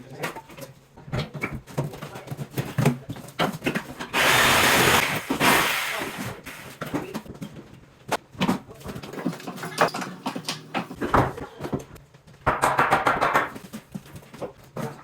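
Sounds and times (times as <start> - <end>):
power tool running: 4.1 - 6.4
knocks and clatter: 6.8 - 15.0.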